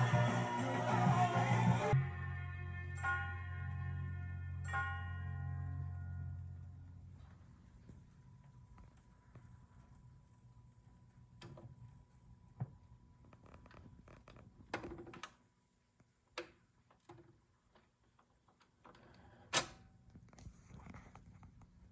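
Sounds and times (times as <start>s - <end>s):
faint low hum: 3.6s - 14.8s.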